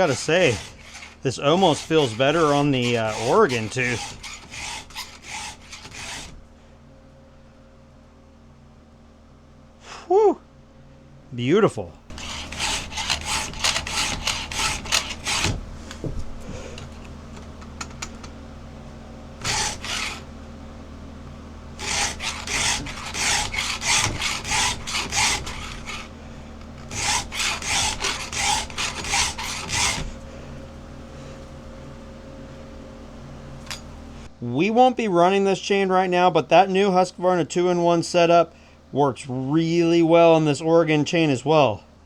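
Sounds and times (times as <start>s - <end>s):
file rasping on saw chain: 0.0s - 6.4s, 12.1s - 15.6s, 19.4s - 20.3s, 21.8s - 26.1s, 26.8s - 30.2s.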